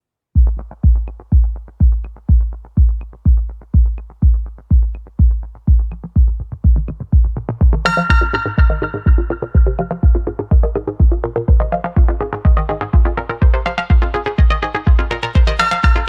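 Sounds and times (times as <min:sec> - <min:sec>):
heavy kick drum: 0:00.4 - 0:16.0
sustained synth chords: 0:05.8 - 0:16.0.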